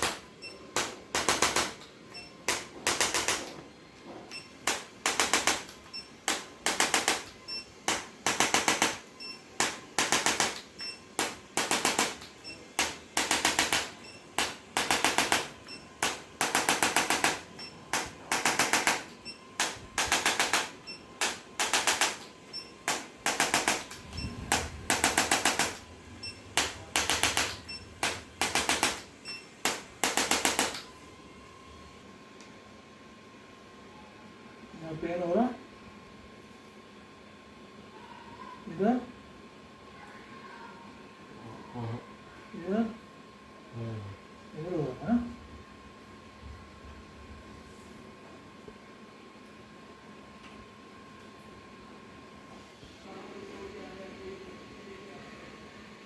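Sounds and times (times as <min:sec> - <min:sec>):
rapid mechanical taps: 0:00.0 - 0:01.9, 0:02.5 - 0:03.6, 0:04.6 - 0:30.8.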